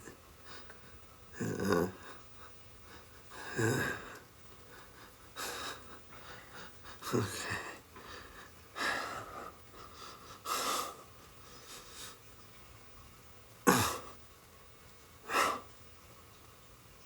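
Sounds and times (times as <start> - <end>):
person breathing heavily: 0.3 - 12.3, 15.2 - 15.7.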